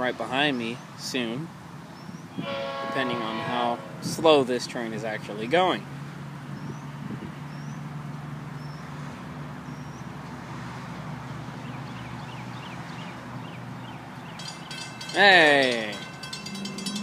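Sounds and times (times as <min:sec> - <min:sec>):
birds chirping: 0:06.4 - 0:07.9, 0:11.3 - 0:17.0.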